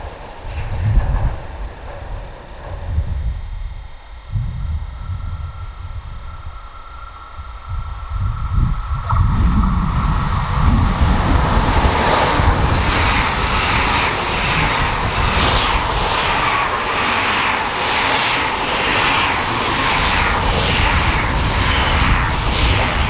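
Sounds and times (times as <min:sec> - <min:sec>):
train passing at speed: 0:09.0 - 0:23.0.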